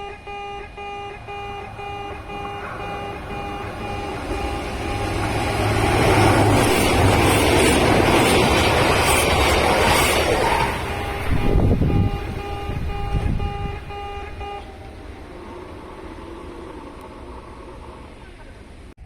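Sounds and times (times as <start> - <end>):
level crossing bell beeping: 0.0 - 6.2, 10.8 - 15.1
train rumble and wheel noise: 0.0 - 19.0.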